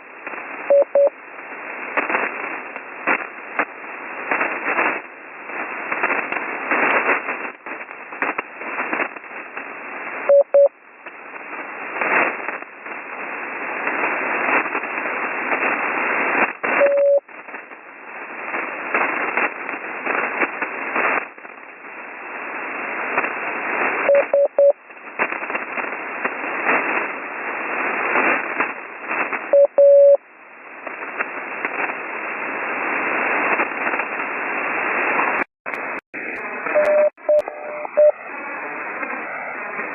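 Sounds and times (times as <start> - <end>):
radio static hiss: 0.0 - 39.9
morse code tone bursts: 0.7 - 1.1, 10.3 - 10.7, 16.8 - 17.2, 24.1 - 24.8, 29.6 - 30.2, 36.7 - 38.2.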